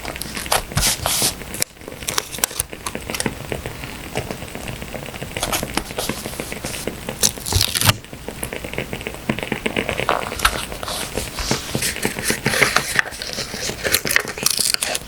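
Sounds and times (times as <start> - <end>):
paper rustling: 0.0 - 3.3, 5.4 - 8.0, 9.6 - 15.0
firewood crackling: 0.0 - 15.0.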